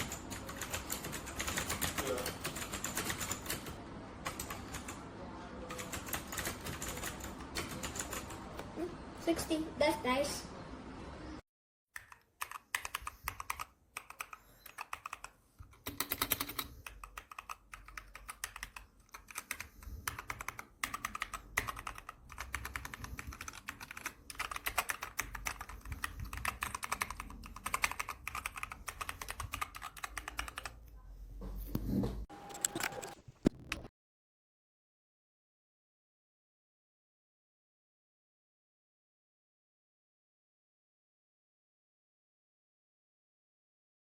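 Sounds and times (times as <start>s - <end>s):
mechanical keyboard typing: 0.0s - 5.0s, 5.7s - 8.5s, 12.0s - 30.8s, 32.3s - 33.9s.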